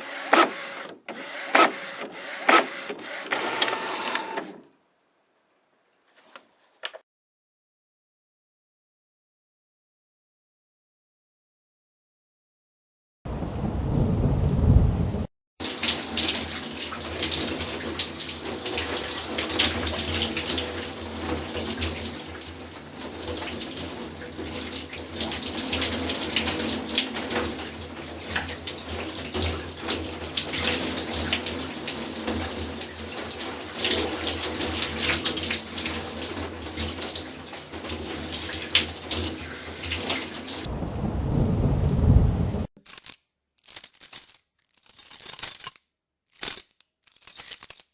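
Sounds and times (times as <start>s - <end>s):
tap water splashing into sink: 15.6s - 40.7s
deep noisy sound: 40.7s - 42.7s.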